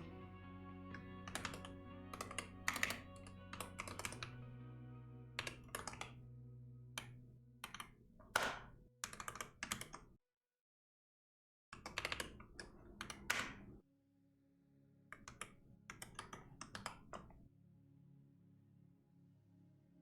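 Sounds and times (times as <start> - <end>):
soft background music chords: 0.0 - 9.0
computer keyboard typing: 1.3 - 4.3, 5.4 - 6.2, 7.7 - 10.0, 11.8 - 13.5.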